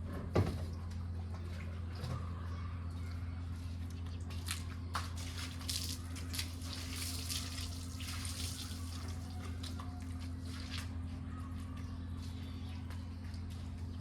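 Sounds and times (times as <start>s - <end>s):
tap water running and splashing: 5.0s - 9.8s.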